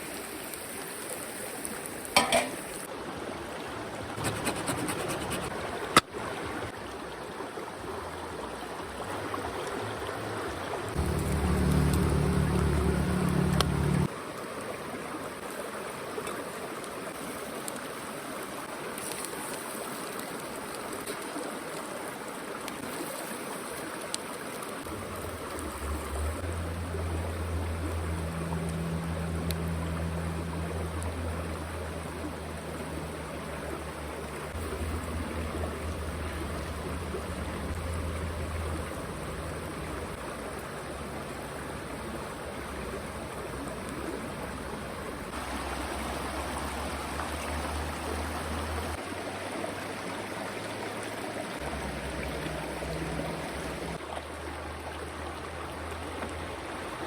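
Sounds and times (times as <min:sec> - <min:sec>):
stream rushing and trickling: 0:00.0 - 0:57.0
low steady hum: 0:11.0 - 0:14.1, 0:24.9 - 0:44.0.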